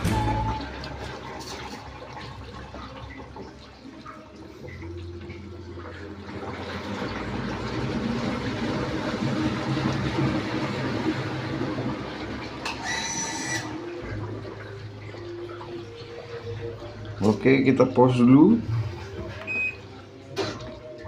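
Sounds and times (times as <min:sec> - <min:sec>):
low machine hum: 0:00.0 - 0:13.0
water filling washing machine tub: 0:00.0 - 0:21.0.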